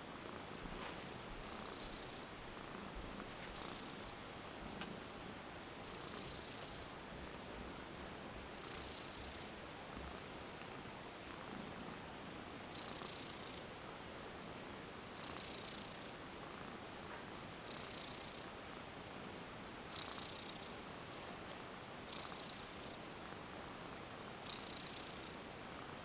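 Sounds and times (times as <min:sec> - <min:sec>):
cat purring: 0:00.1 - 0:05.0, 0:05.8 - 0:07.6, 0:08.6 - 0:12.1, 0:12.7 - 0:13.7, 0:15.1 - 0:18.6, 0:19.9 - 0:21.0, 0:22.0 - 0:26.0.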